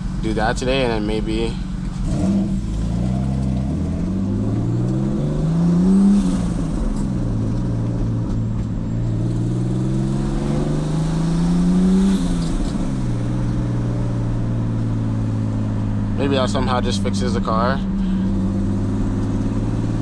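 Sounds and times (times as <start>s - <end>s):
car engine revving: 0.0s - 20.0s.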